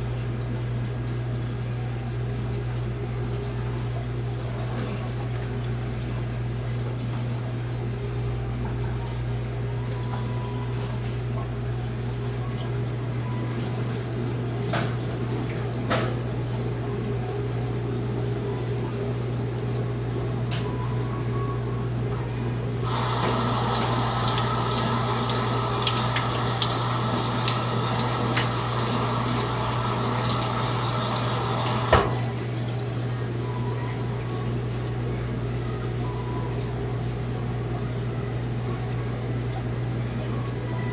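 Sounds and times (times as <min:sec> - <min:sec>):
water tap running: 0:22.8 - 0:33.3.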